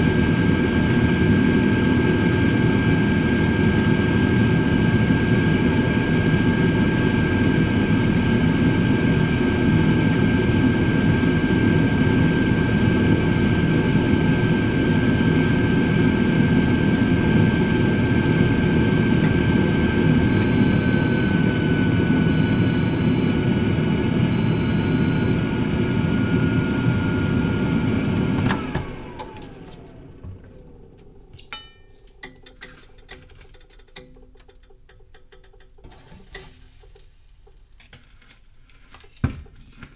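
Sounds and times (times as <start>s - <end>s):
air fryer fan whining: 0.0s - 36.6s
long beeps: 20.2s - 21.6s, 22.2s - 23.5s, 24.3s - 25.5s.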